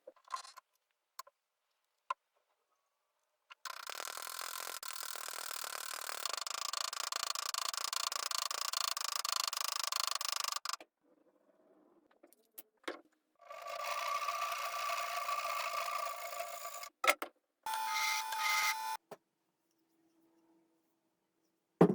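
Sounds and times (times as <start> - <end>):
small electric power tool running: 13.4 - 16.9, 17.7 - 19.0.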